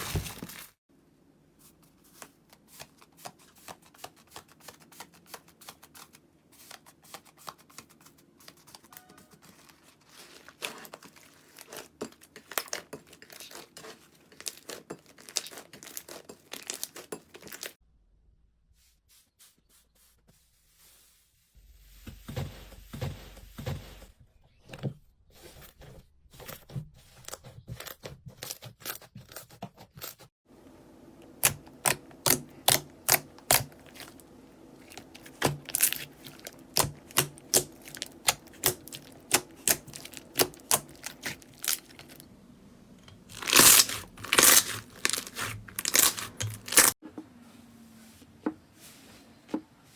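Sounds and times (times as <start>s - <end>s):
slime crackling and clicking: 43.4s - 46.9s.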